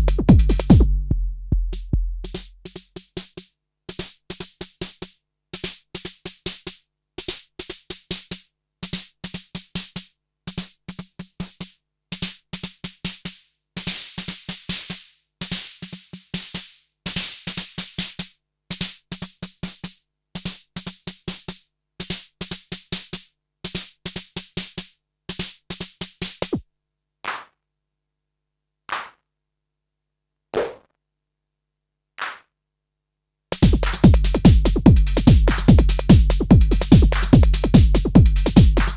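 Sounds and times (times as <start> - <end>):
deep kick drum pattern: 0.0 - 2.8, 33.6 - 38.9
drum machine percussive hits: 0.0 - 2.9, 33.6 - 38.9.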